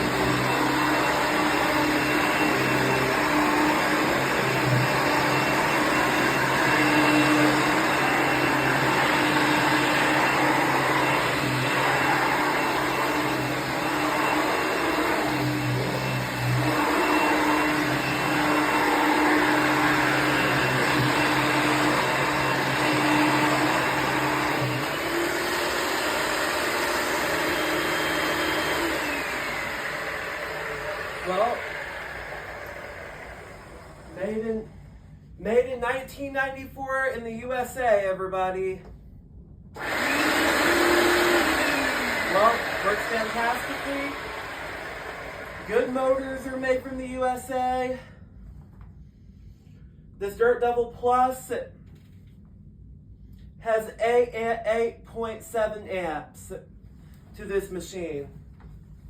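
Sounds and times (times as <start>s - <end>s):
vacuum cleaner motor whine: 0.0s - 34.7s, 39.8s - 47.5s.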